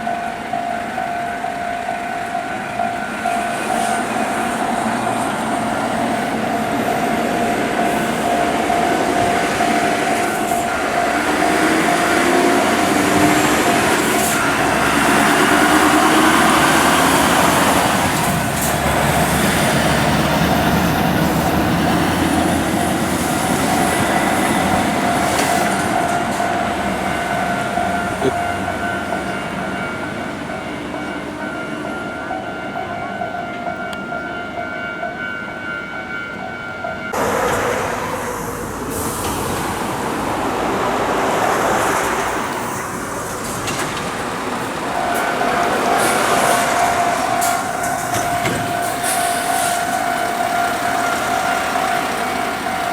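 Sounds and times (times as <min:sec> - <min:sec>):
truck diesel engine rumbling: 0:04.2 - 0:31.4.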